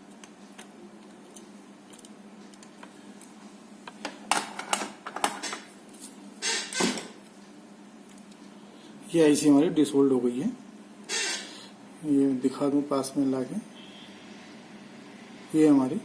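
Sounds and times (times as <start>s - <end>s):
steady low hum: 0.0s - 16.0s
tools scraping circuit board: 11.1s - 11.5s.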